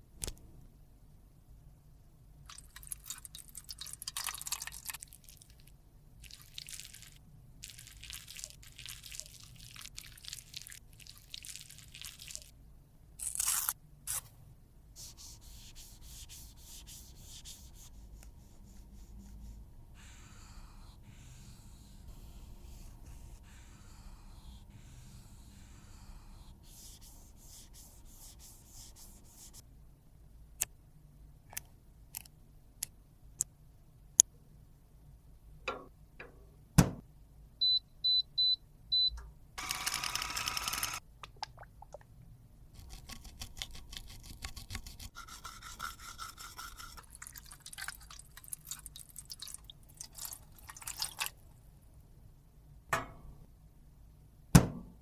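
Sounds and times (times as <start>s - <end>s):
tool scraping makeup: 42.8s - 47.1s.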